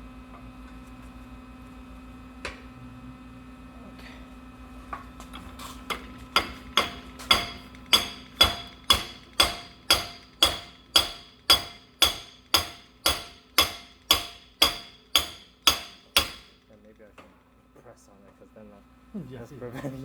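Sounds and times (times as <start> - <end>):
hammer striking steel vise: 5.9 - 16.6.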